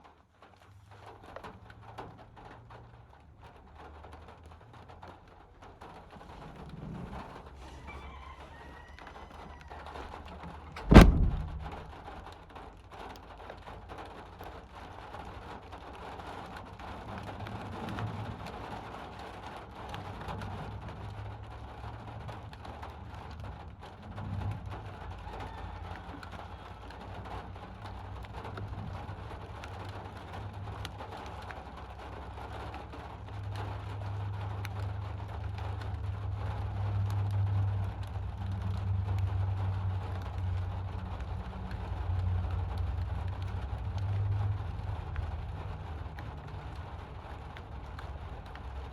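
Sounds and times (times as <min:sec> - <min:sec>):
steady rainfall: 0:00.0 - 0:48.9
low rumbles of thunder: 0:08.9 - 0:12.3
loud thunderclap: 0:10.6 - 0:12.3.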